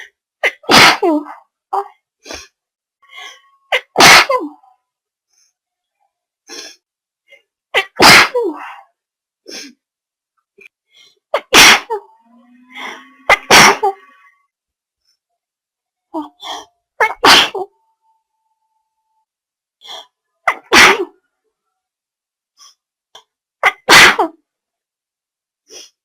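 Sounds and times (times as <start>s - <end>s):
person sneezing: 0.4s - 1.3s, 3.7s - 4.5s, 7.8s - 8.8s, 11.4s - 12.0s, 12.8s - 14.0s, 16.4s - 17.7s, 20.5s - 21.2s, 23.6s - 24.4s
breaths and voice sounds: 1.2s - 3.7s, 10.6s - 11.4s, 12.6s - 15.3s, 16.1s - 17.0s, 19.8s - 20.3s.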